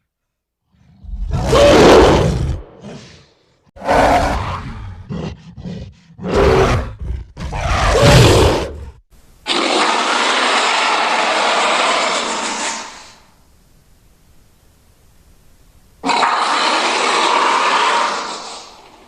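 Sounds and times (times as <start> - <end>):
giant gorilla roaring: 0.8 - 13.0, 16.0 - 18.9.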